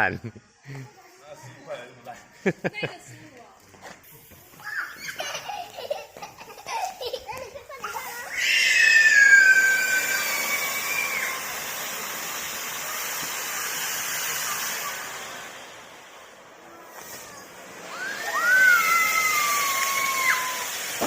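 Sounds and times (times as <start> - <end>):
hiss of spraying sparks: 3.9 - 21.0
firework whistle: 8.1 - 21.0.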